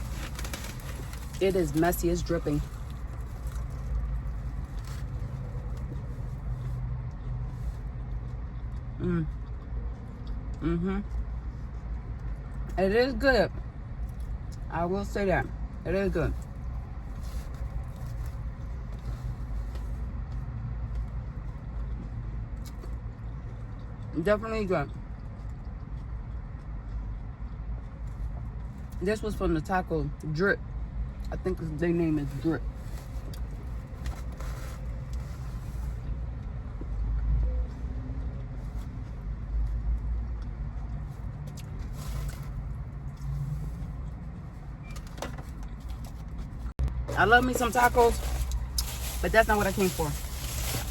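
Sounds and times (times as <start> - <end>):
food handling clicks and rustles: 0.0 - 6.7, 32.2 - 36.0, 44.9 - 50.9
car interior rumble: 0.0 - 8.3, 41.0 - 50.9.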